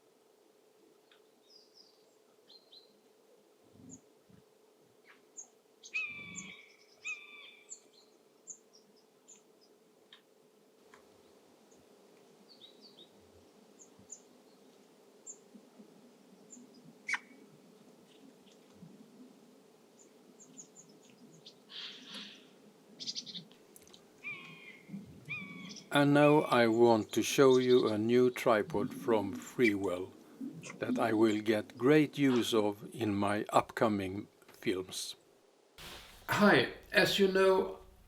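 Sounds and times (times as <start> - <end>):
wild birds calling: 5.1 - 8.7, 16.4 - 17.5, 20.0 - 23.6, 24.2 - 32.6
faint high bird chirps: 5.4 - 8.6.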